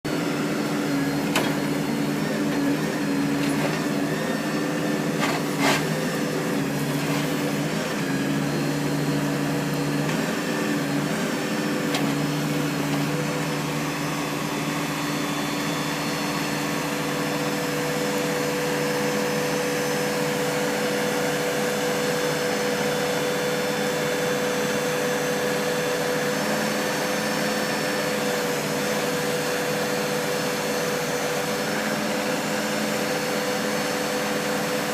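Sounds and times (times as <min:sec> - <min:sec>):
diesel engine running: 0:00.0 - 0:24.7.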